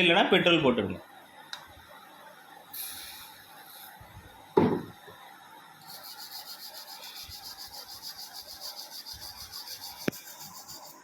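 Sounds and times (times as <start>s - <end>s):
brush scrubbing connector pins: 5.8s - 11.0s.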